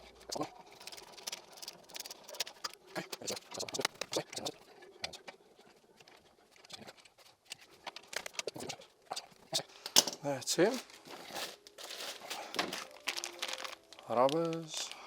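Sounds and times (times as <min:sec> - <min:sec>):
metal parts clicking and tapping: 0:09.8 - 0:10.3.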